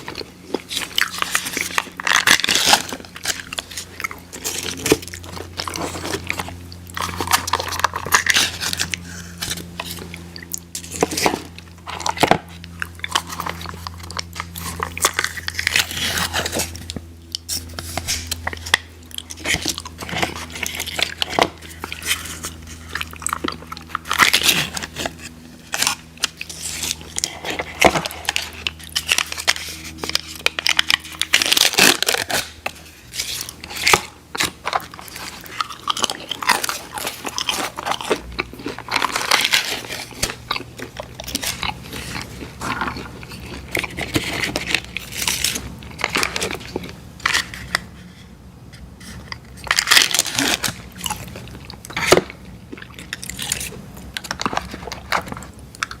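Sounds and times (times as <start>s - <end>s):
crunchy food being chewed: 0.0s - 56.0s
low hum: 0.0s - 56.0s.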